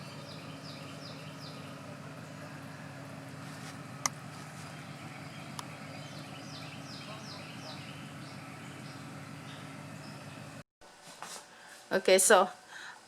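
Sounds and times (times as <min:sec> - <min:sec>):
bird chirping: 0:00.0 - 0:10.6
steady low hum: 0:00.0 - 0:10.6
sharp clicks: 0:04.0 - 0:04.2, 0:05.5 - 0:05.7.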